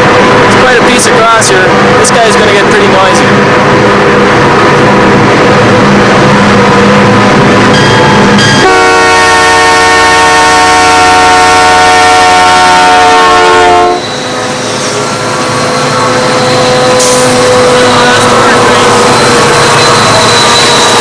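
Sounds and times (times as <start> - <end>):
locomotive air horn blast: 8.6 - 14.1
diesel engines running: 13.7 - 21.0.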